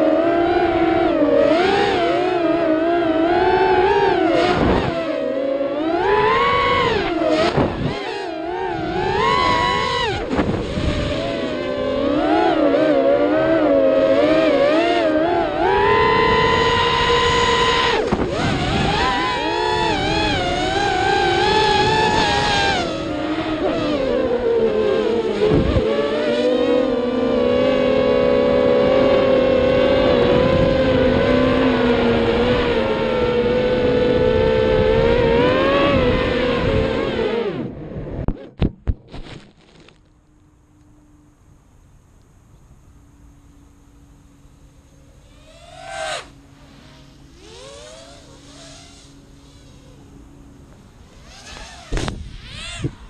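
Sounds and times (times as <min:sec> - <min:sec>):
quadcopter motors whining: 0:00.0 - 0:41.4, 0:42.8 - 0:53.0.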